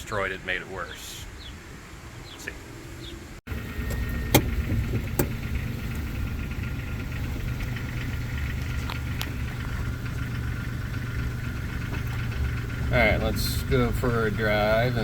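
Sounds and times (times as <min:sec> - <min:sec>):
car engine idling: 0:03.5 - 0:15.0.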